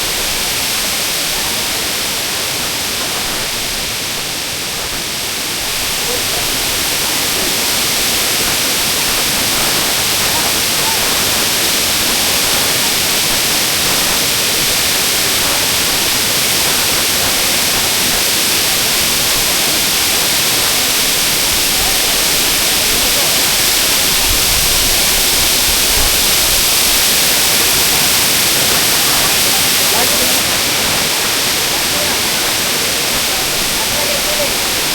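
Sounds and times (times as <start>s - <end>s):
waterfall rushing: 0.0s - 34.9s.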